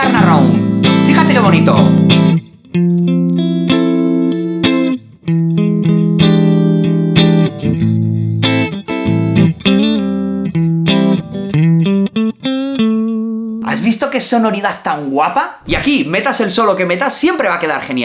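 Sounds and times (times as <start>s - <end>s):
blues guitar chords: 0.0s - 13.7s.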